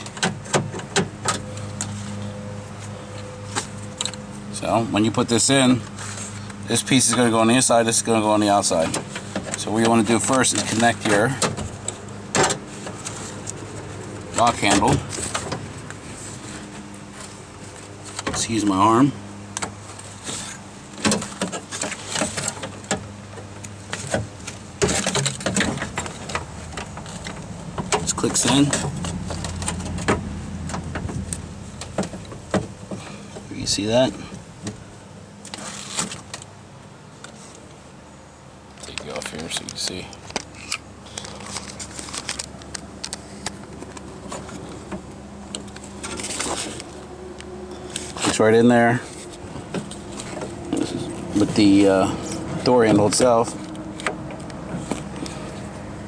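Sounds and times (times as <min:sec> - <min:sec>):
light clicks of metal parts: 0:38.6 - 0:55.8.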